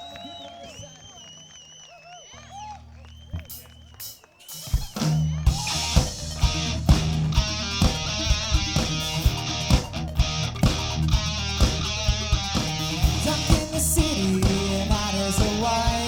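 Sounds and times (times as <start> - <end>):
drums: 0.0 - 1.7, 2.3 - 16.0
bass guitar: 4.8 - 16.0
electric guitar: 5.0 - 16.0.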